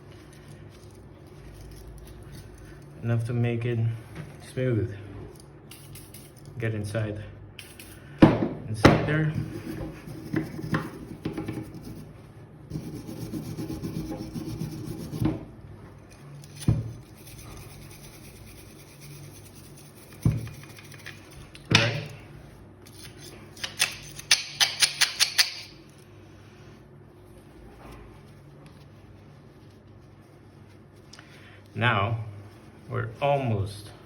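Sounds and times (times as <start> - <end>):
brush scrubbing rust off metal: 16.5 - 21.5
tool clicking: 23.6 - 25.7.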